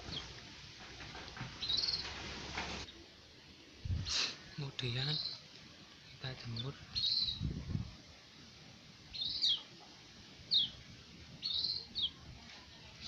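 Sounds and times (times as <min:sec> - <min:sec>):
bird giving high chirps: 0:06.6 - 0:07.4, 0:09.1 - 0:09.7, 0:11.4 - 0:12.2.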